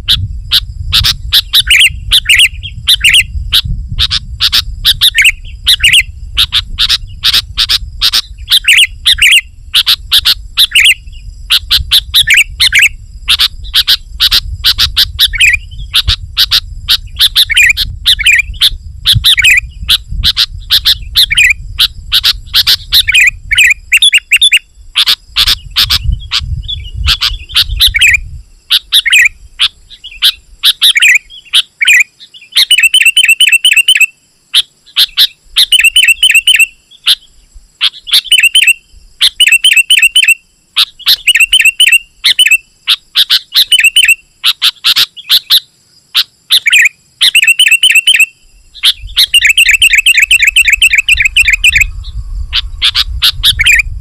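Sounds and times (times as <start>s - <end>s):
bird singing: 0.0s - 54.0s
low rumble: 51.2s - 54.0s.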